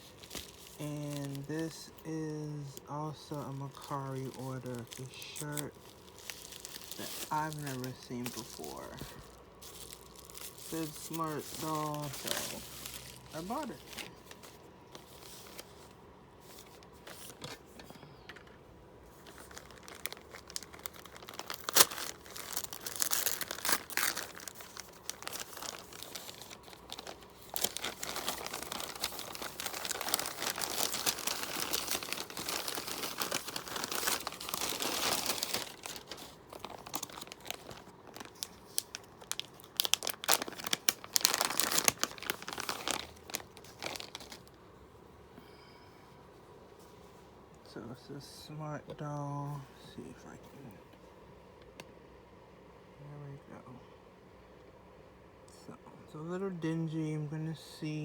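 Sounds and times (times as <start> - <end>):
packaging crinkling and tearing: 0.0 - 15.9, 19.1 - 44.6.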